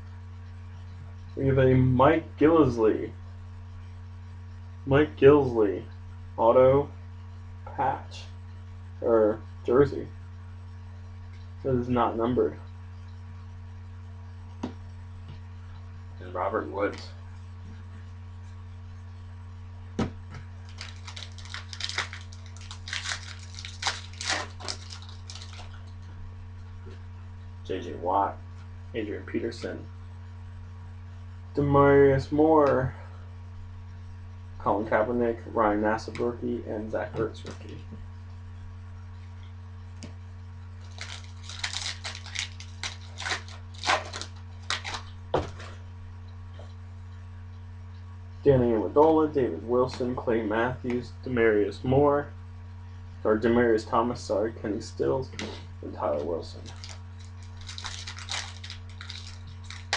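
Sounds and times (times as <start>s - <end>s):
low electrical hum: 0.0s - 59.9s
foil wrapper tearing and crinkling: 20.6s - 25.8s, 40.8s - 45.1s, 56.6s - 59.9s.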